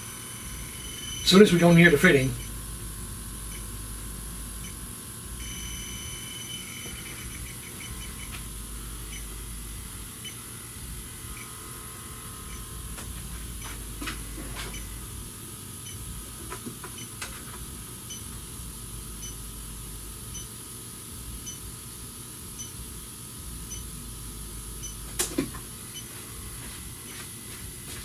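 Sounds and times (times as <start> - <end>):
leak detector beeping: 0.0 - 2.6, 3.4 - 3.8, 4.5 - 10.5, 13.5 - 15.0, 15.8 - 16.1, 18.0 - 18.4, 19.2 - 19.5, 20.3 - 20.5, 21.4 - 21.7, 22.6 - 22.8, 23.6 - 24.0, 24.7 - 25.2, 25.9 - 26.2
faint steady whine: 0.0 - 28.0.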